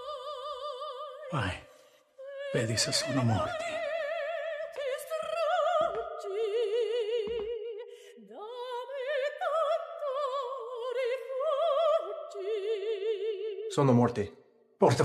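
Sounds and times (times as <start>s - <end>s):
operatic singing: 2.2s - 14.0s.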